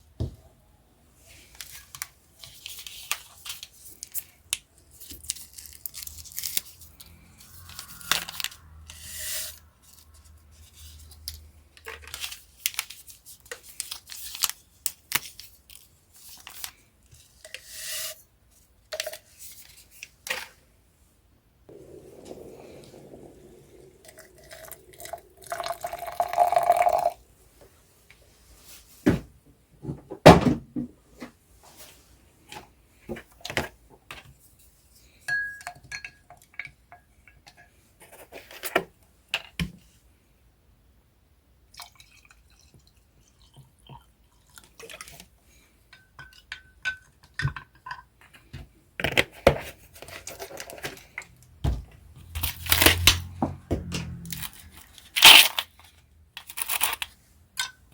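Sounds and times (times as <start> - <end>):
liquid pouring: 21.7 - 27.2
cups and utensils clinking: 22.2 - 27.2.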